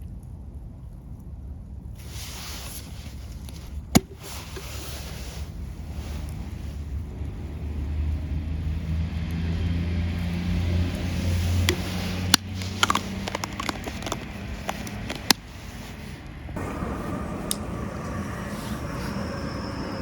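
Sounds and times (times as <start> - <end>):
low engine hum: 2.0 - 20.0
campfire crackles and pops: 10.2 - 15.8, 16.5 - 20.0.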